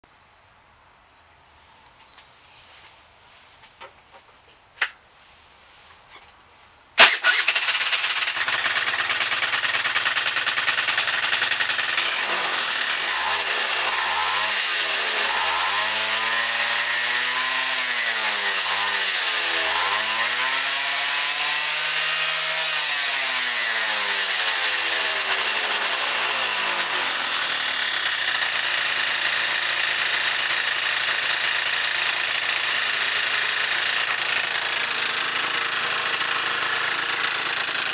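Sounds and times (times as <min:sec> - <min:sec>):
buzzing engine noise: 0:07.0 - 0:37.9
scooter engine revving and idling: 0:07.0 - 0:37.9.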